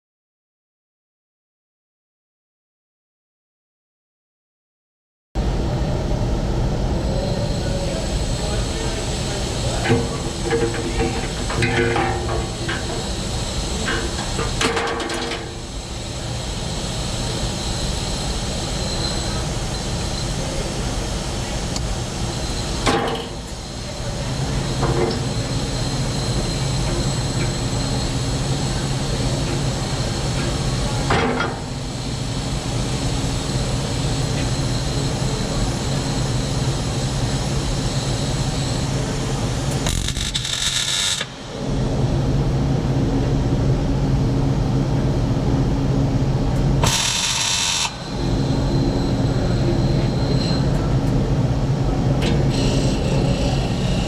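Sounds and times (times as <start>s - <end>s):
welder arc crackling and hissing: 7.6s - 20.6s, 39.7s - 41.6s, 46.8s - 50.0s.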